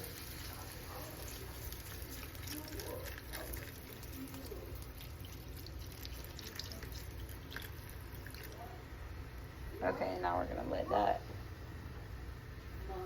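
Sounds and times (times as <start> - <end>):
broth bubbling in a pot: 0.0 - 9.6.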